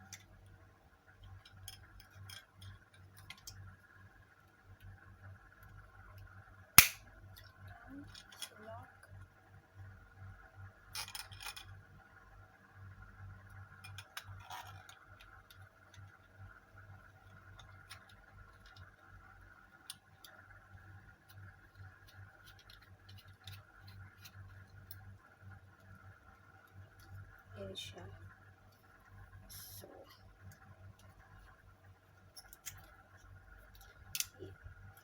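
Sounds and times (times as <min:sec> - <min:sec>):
steady low hum: 0:00.0 - 0:35.0
plastic parts clicking: 0:33.7 - 0:34.4.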